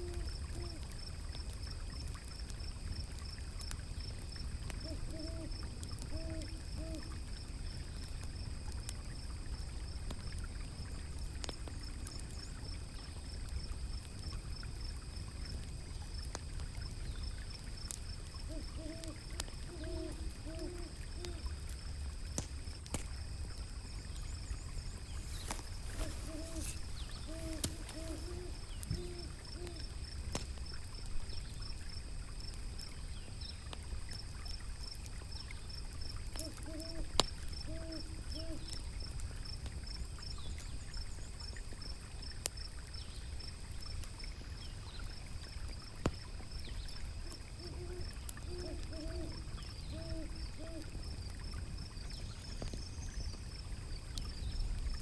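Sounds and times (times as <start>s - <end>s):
low rumble of river water: 0.0s - 55.0s
owl hooting: 4.8s - 5.5s, 6.1s - 7.1s, 18.5s - 21.5s, 25.0s - 29.9s, 36.4s - 38.8s, 47.2s - 51.0s
crackling wood fire pops: 11.1s - 12.3s, 15.6s - 16.7s, 21.2s - 29.0s, 29.6s - 31.3s, 37.2s - 37.6s, 45.6s - 47.4s.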